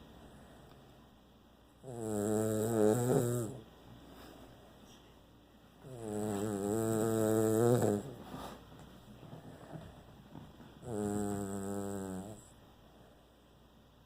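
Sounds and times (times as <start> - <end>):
dog snoring: 1.8 - 3.7, 5.8 - 8.5, 10.8 - 12.6.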